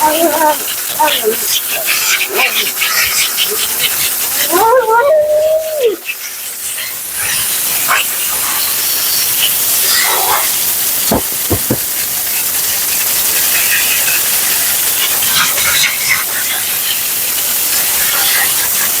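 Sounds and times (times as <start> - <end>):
short knocks: 11.1 - 12.0
pet dryer blowing air: 11.1 - 12.3.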